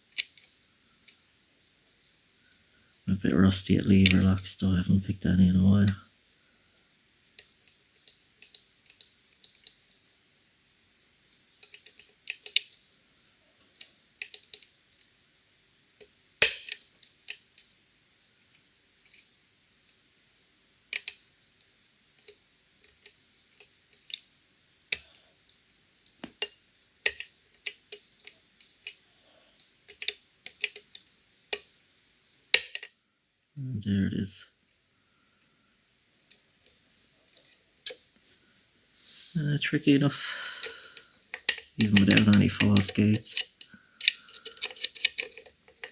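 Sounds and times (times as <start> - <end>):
lock picks clicking in lock: 41.3 - 45.9.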